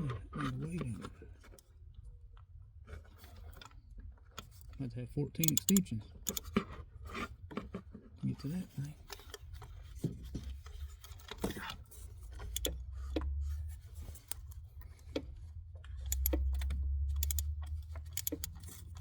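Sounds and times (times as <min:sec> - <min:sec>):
metal tools clicking and clinking: 0:05.4 - 0:06.6, 0:10.4 - 0:13.2, 0:16.0 - 0:19.0.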